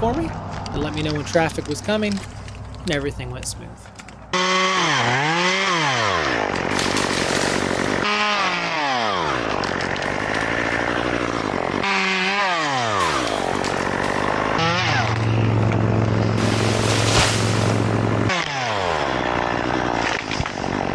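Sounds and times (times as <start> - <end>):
chainsaw cutting wood: 4.2 - 20.9.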